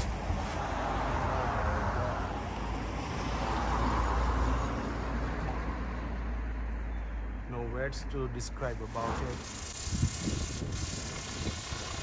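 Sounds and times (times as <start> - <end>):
pressure washer jet spraying: 8.8 - 12.0.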